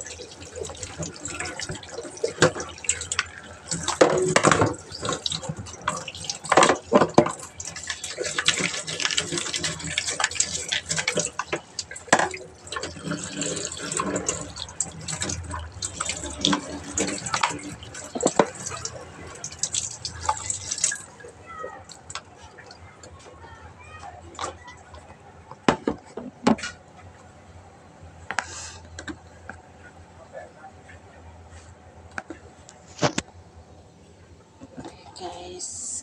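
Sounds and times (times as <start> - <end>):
tap water running over filter: 0.0 - 23.2.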